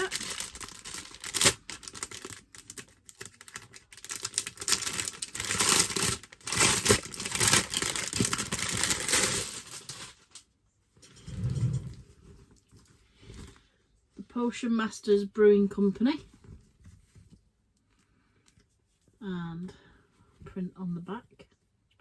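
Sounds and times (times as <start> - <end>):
packaging crinkling and tearing: 0.0 - 10.4.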